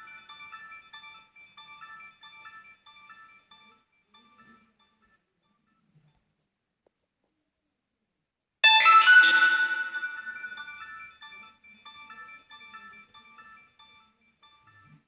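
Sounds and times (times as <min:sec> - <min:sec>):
bright ringing hit: 0:08.6 - 0:10.7
melody of short notes: 0:08.6 - 0:10.8
phone ringtone: 0:08.6 - 0:10.8.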